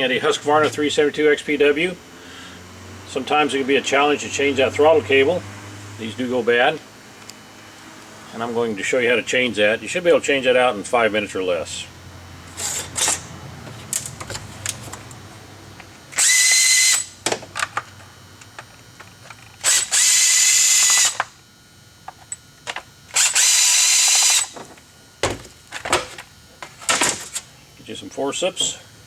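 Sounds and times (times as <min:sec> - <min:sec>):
cordless drill whine: 0:00.0 - 0:25.2.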